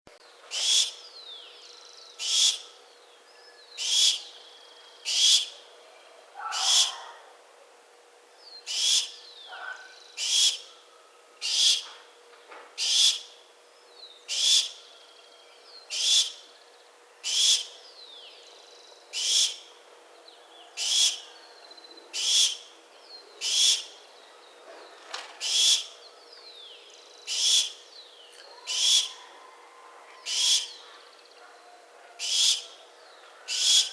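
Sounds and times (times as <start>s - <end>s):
faint steady hum: 0.1s - 33.9s
barn owl screeching: 6.4s - 7.2s, 8.7s - 10.7s, 20.8s - 21.3s, 23.4s - 23.9s, 25.4s - 25.9s, 28.5s - 30.8s, 32.2s - 32.8s, 33.5s - 33.9s.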